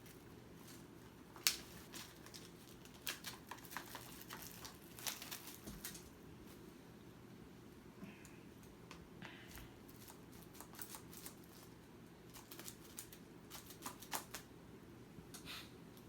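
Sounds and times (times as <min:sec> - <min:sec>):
fingers picking at plastic wrap: 0:00.0 - 0:06.2, 0:09.9 - 0:14.5
low room hum: 0:00.0 - 0:16.0.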